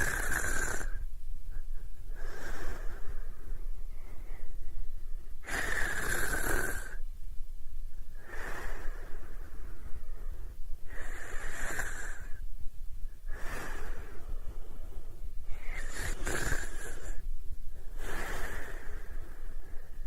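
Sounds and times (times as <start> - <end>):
person snoring: 0.0 - 1.0, 5.4 - 7.0, 10.9 - 12.4, 15.5 - 17.2.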